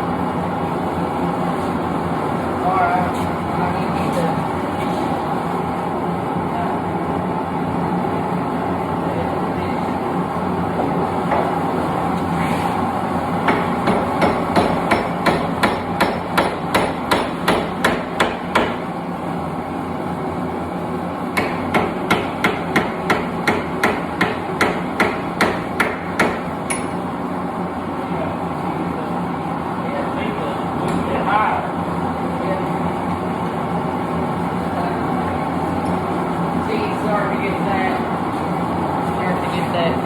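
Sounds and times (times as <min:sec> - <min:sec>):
steady background hum: 0:00.0 - 0:40.0
hammer striking steel on anvil: 0:13.5 - 0:18.8, 0:21.4 - 0:27.0.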